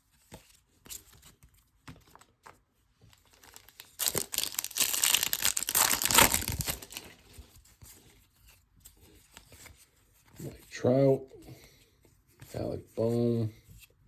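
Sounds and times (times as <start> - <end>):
foil wrapper tearing and crinkling: 3.2 - 7.3.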